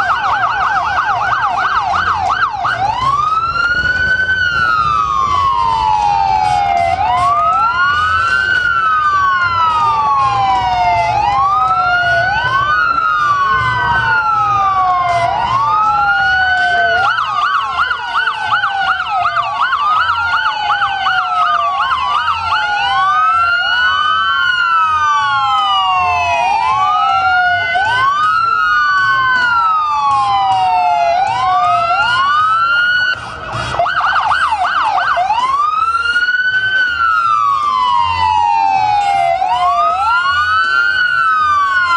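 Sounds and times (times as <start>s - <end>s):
emergency sirens wailing: 0.0s - 41.9s.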